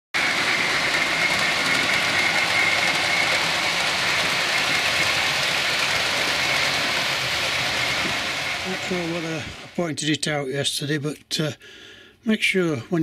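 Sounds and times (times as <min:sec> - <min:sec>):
thin high whine: 0:00.2 - 0:10.0
model train whirring rumble: 0:00.2 - 0:10.4.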